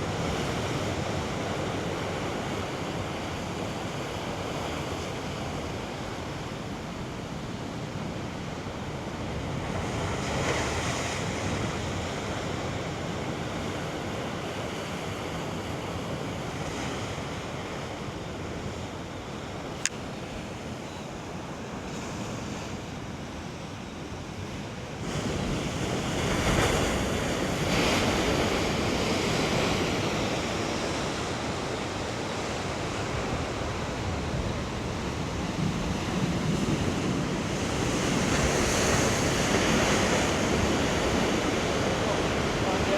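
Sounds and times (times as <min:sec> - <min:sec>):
ocean waves breaking on rocks: 0:24.2 - 0:42.9.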